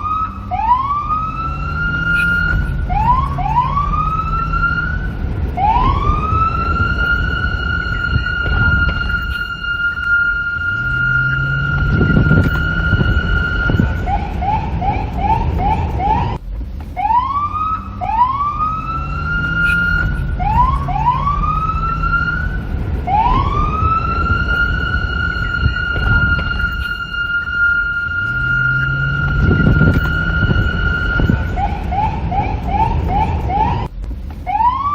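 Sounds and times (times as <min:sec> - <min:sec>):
police siren: 0:00.0 - 0:16.4, 0:17.0 - 0:34.9
low wind rumble: 0:00.0 - 0:34.9.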